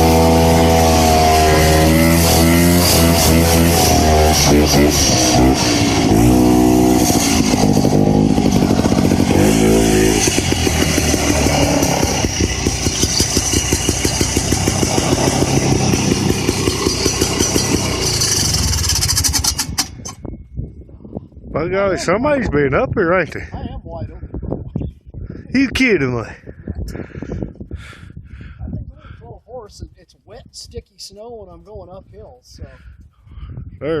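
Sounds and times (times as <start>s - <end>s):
snowmobile engine running: 0.0s - 19.8s.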